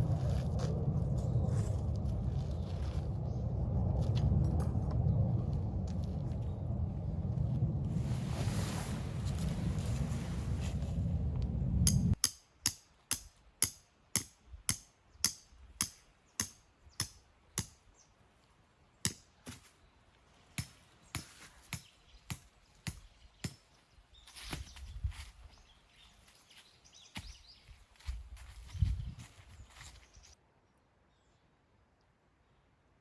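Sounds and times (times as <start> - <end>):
low rumble: 0.0 - 12.2.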